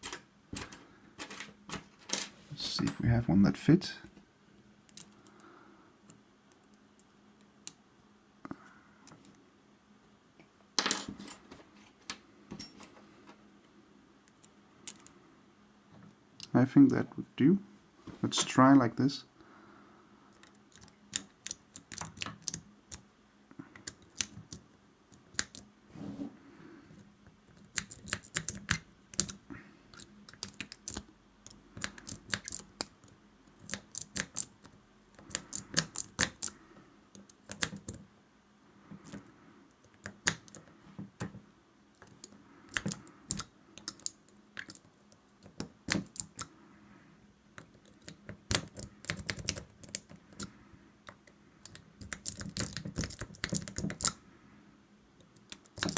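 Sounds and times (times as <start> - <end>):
lock pick clicking and scraping: 27.6 - 38.0, 41.9 - 46.5, 47.6 - 54.2, 55.2 - 55.9.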